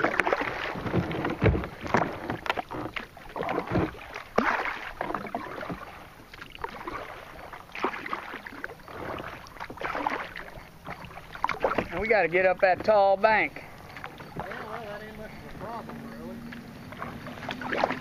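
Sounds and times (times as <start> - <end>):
kayak paddle splashing: 0.0 - 18.0.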